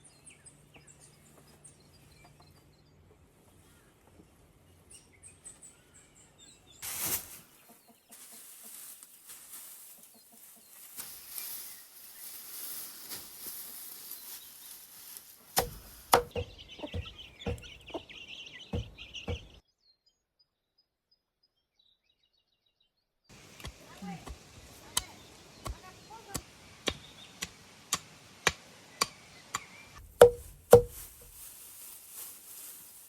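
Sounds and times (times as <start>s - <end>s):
chickens clucking: 7.5s - 9.0s, 9.7s - 11.0s, 15.6s - 19.6s
sharp knocks: 15.6s - 17.8s, 18.8s - 19.6s, 30.0s - 31.1s.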